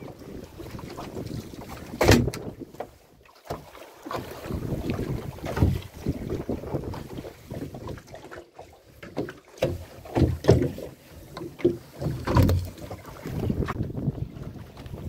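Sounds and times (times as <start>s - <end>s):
knocks and thumps on boat: 0.0s - 15.0s
wind buffeting microphone: 4.4s - 8.0s, 12.2s - 15.0s.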